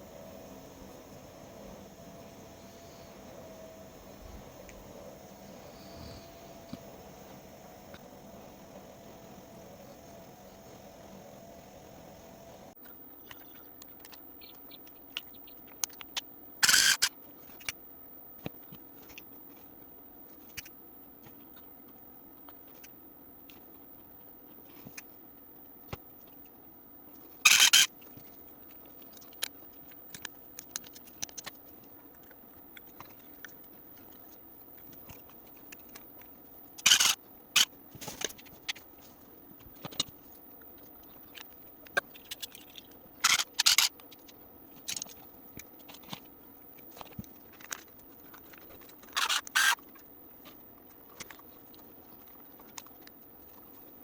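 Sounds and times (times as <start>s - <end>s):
small clicks and taps: 12.8s - 16.3s.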